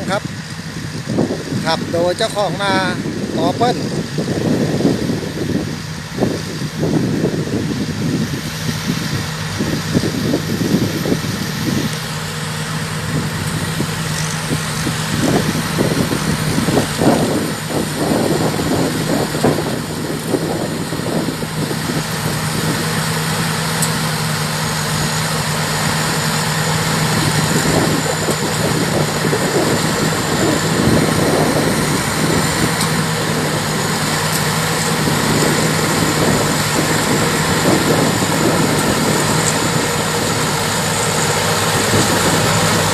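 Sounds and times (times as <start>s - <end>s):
combine harvester engine hum: 0.0s - 42.9s.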